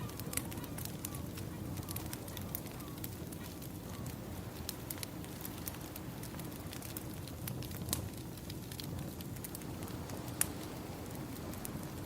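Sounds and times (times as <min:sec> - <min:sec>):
wood fire crackling and popping: 0:00.0 - 0:12.0
ocean waves: 0:09.6 - 0:12.0.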